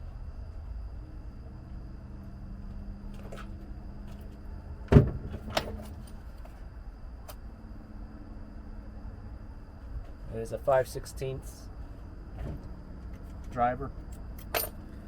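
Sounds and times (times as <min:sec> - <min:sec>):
metal tools clicking and clinking: 0:14.4 - 0:14.8.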